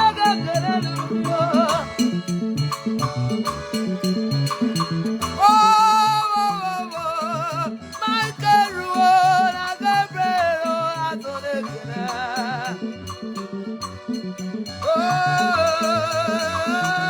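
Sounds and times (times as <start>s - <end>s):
bass and drum groove: 0.0s - 6.0s
upbeat worship music: 0.0s - 17.0s
wavering lead melody: 0.0s - 17.0s.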